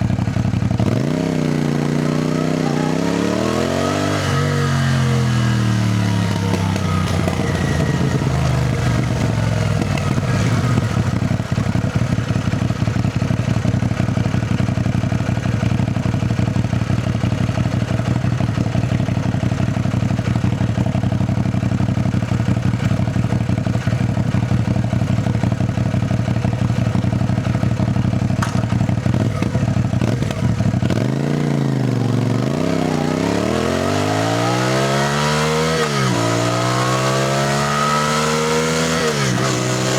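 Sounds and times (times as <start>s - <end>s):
motorcycle engine: 0.0s - 39.9s
motorcycle gear changes: 2.4s - 11.7s, 26.6s - 34.9s.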